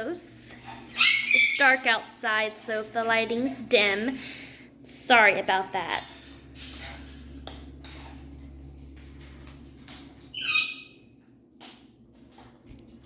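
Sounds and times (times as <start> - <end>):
low steady hum: 0.0 - 13.0
parrot squawk: 1.0 - 1.8, 10.4 - 11.0.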